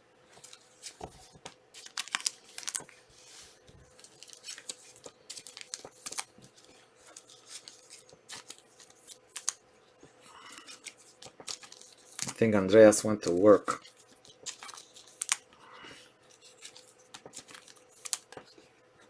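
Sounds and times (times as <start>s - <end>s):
wrappers tearing and crinkling: 0.4s - 3.0s, 3.9s - 9.6s, 10.3s - 12.4s, 13.7s - 15.5s, 16.3s - 18.5s
cards clicking when handled: 4.0s - 9.6s, 10.5s - 12.4s, 13.7s - 15.4s, 16.6s - 18.5s.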